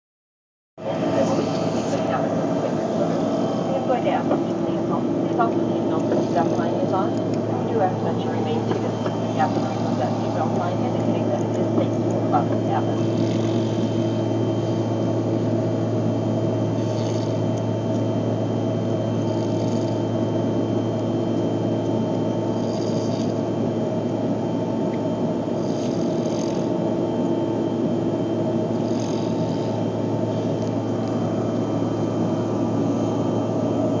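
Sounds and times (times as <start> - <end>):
aircraft cabin drone: 0.8 - 34.0
person snoring: 28.7 - 29.8.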